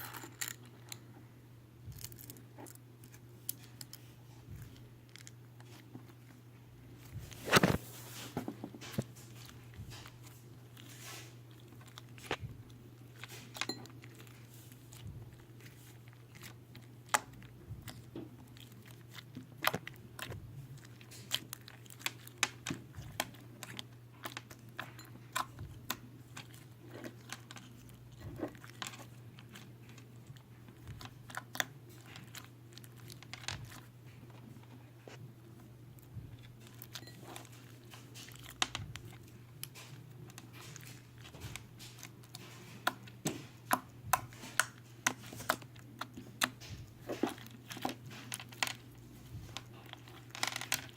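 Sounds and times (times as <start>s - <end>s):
slime squishing with wet pops: 8.9s - 34.4s, 35.9s - 50.9s.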